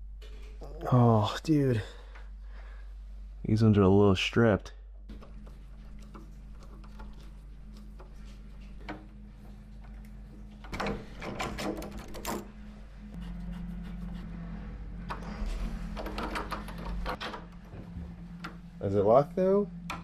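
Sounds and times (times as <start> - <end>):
steady low hum: 0.0 - 20.0
door handle and latch rattling: 10.6 - 12.5, 15.1 - 17.7.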